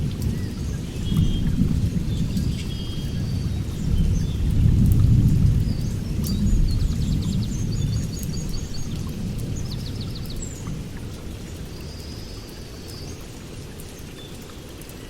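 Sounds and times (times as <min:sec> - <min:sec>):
small birds chirping: 0:05.6 - 0:10.8.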